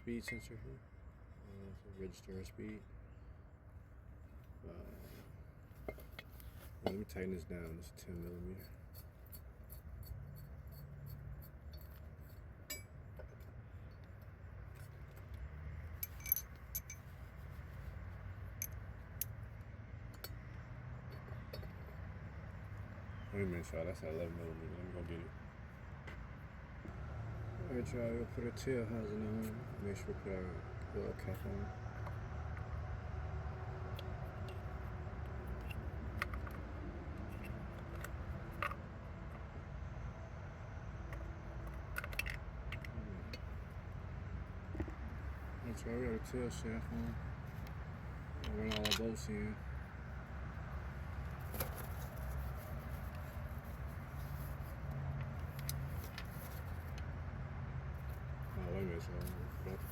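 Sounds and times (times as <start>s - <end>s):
low steady hum: 0.0s - 57.1s
hand tool clinking on bolt: 0.2s - 0.6s, 15.9s - 17.1s, 48.4s - 49.2s.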